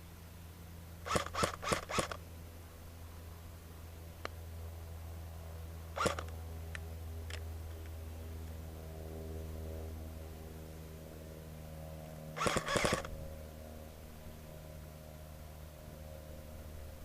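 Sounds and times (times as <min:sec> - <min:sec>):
low mechanical hum: 0:00.0 - 0:17.0
sharp clicks: 0:01.1 - 0:02.2, 0:06.0 - 0:07.9, 0:12.4 - 0:13.1.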